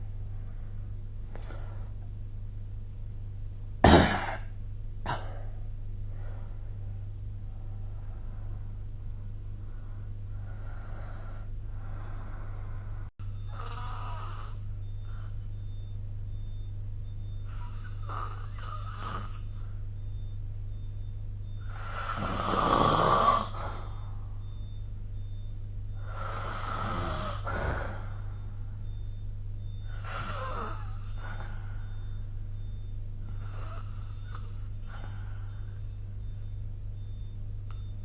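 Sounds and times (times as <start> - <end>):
steady low hum: 0.0 - 38.0
snoring: 13.5 - 14.7, 17.4 - 19.6, 21.6 - 24.1, 26.0 - 28.2, 29.8 - 32.1, 33.2 - 35.2.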